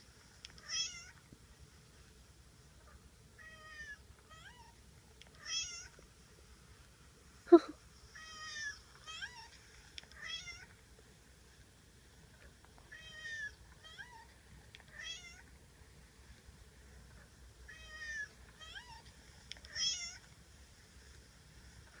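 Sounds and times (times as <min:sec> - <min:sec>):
cat meowing: 0:14.9 - 0:15.4.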